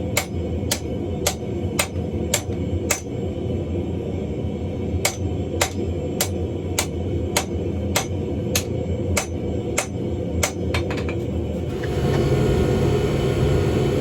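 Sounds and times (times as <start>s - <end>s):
hammer striking steel on anvil: 0.1s - 3.2s, 5.0s - 11.2s.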